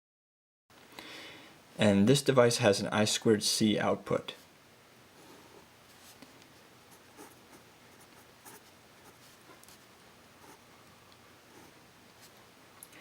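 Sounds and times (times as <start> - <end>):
faint clicks and scratches: 8.0 - 10.6.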